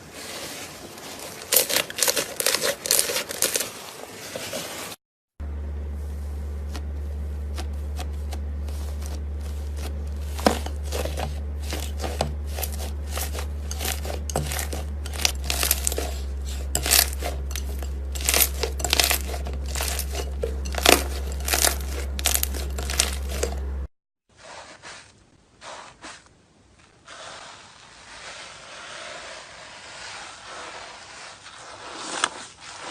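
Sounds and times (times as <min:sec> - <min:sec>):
slime crackling and popping: 0:01.4 - 0:03.7
steady low hum: 0:05.4 - 0:23.9.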